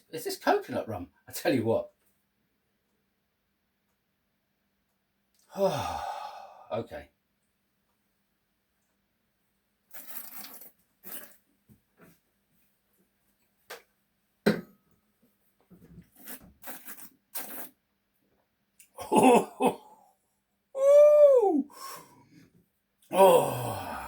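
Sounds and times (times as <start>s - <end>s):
throaty vocal sound: 5.5s - 6.7s, 19.0s - 19.9s, 20.8s - 22.1s, 23.1s - 24.0s
crockery clinking and knocking: 14.5s - 14.8s.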